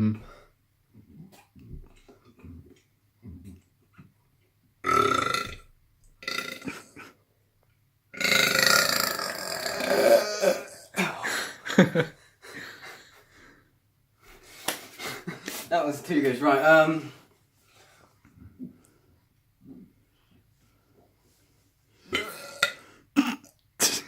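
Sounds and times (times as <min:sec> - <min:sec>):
person burping: 0:04.8 - 0:07.2, 0:08.2 - 0:12.0, 0:22.1 - 0:24.0.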